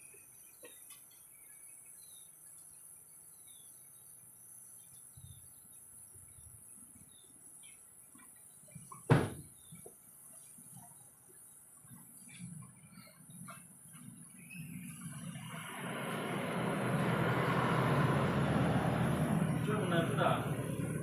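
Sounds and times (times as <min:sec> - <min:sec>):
sharp knock: 0:09.1 - 0:09.5.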